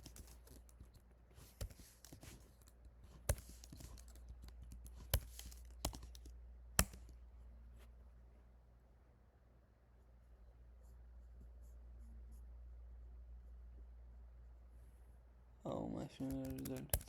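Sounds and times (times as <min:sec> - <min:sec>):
steady low hum: 0:00.0 - 0:17.0
computer keyboard keystrokes: 0:01.6 - 0:07.1, 0:16.2 - 0:17.0.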